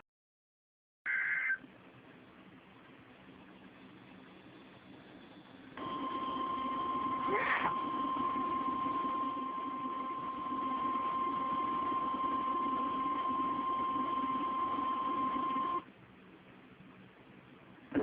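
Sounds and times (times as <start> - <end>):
broadcast hiss and hum: 1.1 - 18.0.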